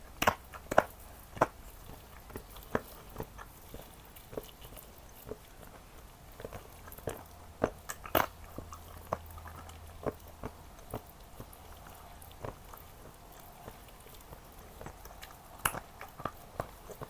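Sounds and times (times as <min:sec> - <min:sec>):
wet chewing and smacking: 0:00.0 - 0:17.0.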